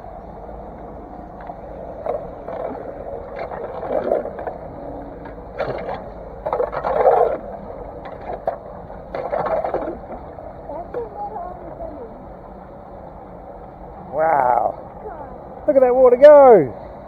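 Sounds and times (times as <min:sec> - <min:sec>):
water rushing down drain: 0:01.2 - 0:10.8.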